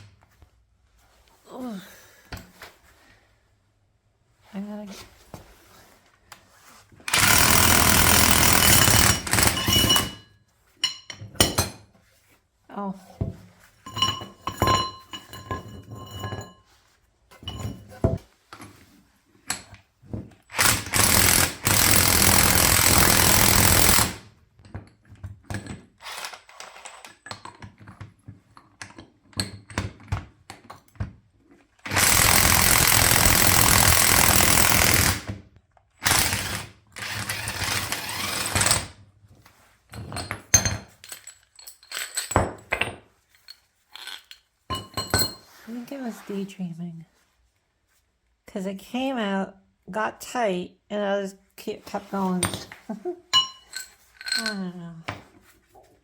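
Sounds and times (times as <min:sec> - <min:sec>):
impact wrench hammering: 0:07.1 - 0:10.2, 0:20.5 - 0:24.2, 0:31.9 - 0:35.4
steel tools clinking: 0:07.1 - 0:11.8, 0:13.8 - 0:16.7, 0:40.2 - 0:45.5, 0:52.3 - 0:54.9.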